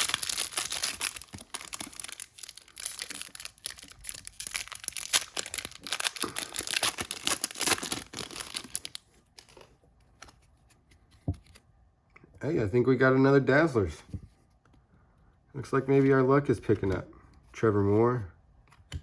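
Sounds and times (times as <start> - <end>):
card pack tearing open: 0.0 - 9.5
card pack wrapper crinkling: 0.0 - 10.4.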